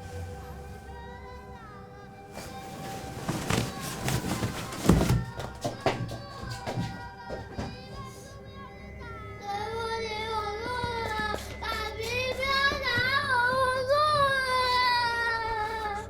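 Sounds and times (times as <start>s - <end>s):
soft music: 0.0s - 16.0s
child singing: 0.8s - 16.0s.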